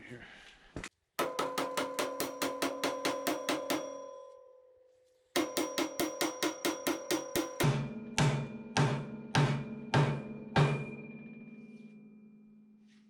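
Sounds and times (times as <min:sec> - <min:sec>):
cowbell-like ticking percussion: 0:01.2 - 0:04.3, 0:05.4 - 0:11.0
deeper drums: 0:07.6 - 0:11.0.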